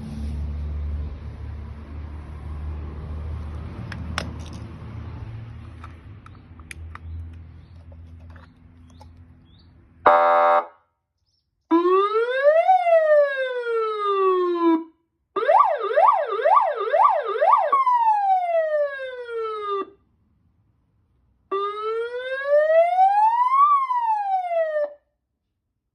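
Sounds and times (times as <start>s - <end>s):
loud horn blast: 10.1s - 10.7s
rising siren wail: 11.7s - 20.0s, 21.5s - 25.0s.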